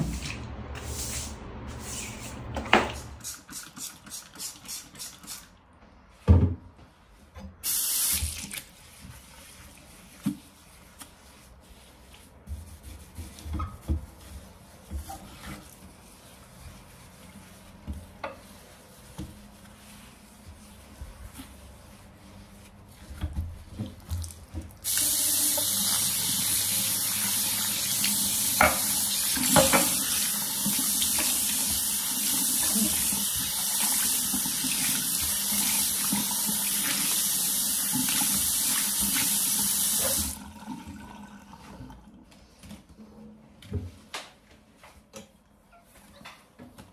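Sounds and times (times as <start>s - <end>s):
tap water running into sink: 24.2s - 41.6s.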